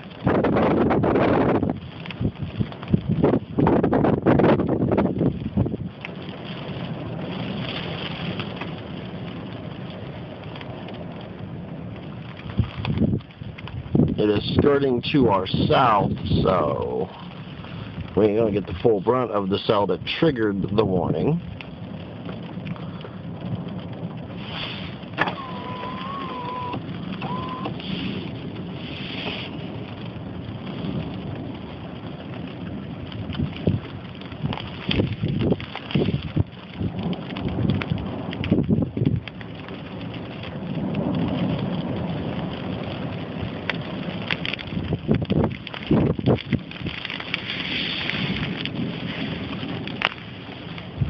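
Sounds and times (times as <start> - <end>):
low rumble: 0.0 - 51.0
steady rain: 0.0 - 51.0
wind on microphone: 0.0 - 51.0
thin wavering whistle: 25.4 - 27.7.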